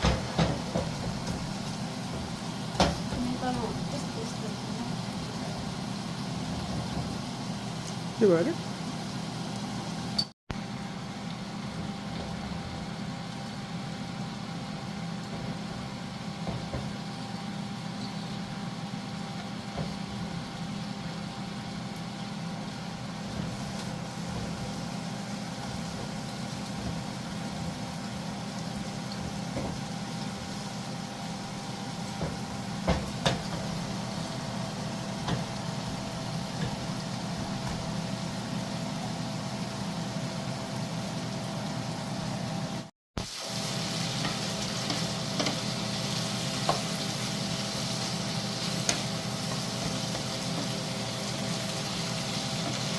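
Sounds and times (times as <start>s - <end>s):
low mechanical hum: 0.0s - 52.9s.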